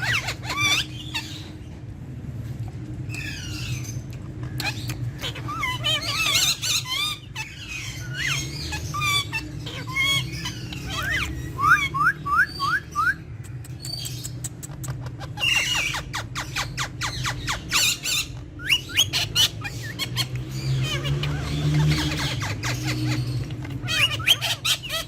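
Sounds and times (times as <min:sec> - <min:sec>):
parrots chirping and whistling: 0:00.0 - 0:01.8, 0:03.1 - 0:25.0
sharp clicks: 0:13.4 - 0:15.1.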